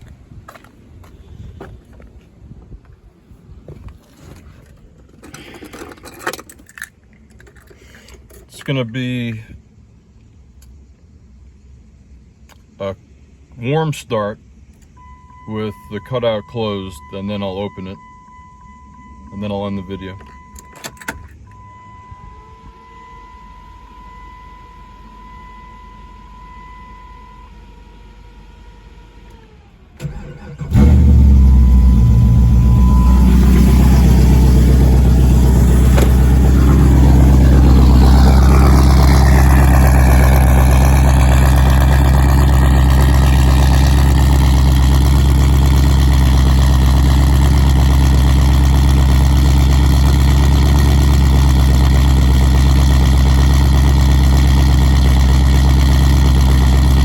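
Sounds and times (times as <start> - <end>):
engine cranking and starting: 4.6 - 8.6, 27.4 - 57.0
loud engine idling: 27.1 - 57.0.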